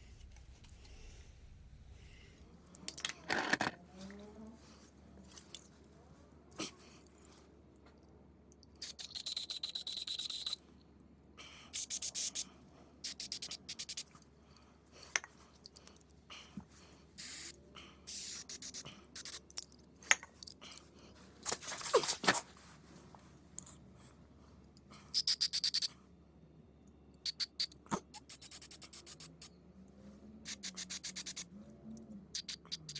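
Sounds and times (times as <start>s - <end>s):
aerosol spray hissing: 17.2s - 17.5s.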